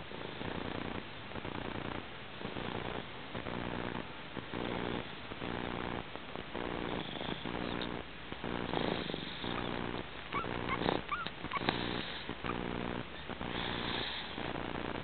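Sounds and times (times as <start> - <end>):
person snoring: 8.6 - 9.8, 10.7 - 12.3, 13.5 - 14.6
short high squeaks: 10.3 - 11.7.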